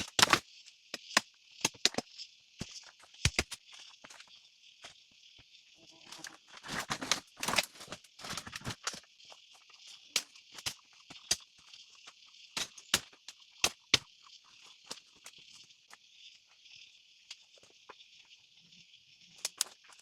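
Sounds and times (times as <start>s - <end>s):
rustling and cracking: 0.0s - 0.4s, 6.1s - 9.1s, 19.4s - 20.0s
insect chorus: 0.0s - 20.0s.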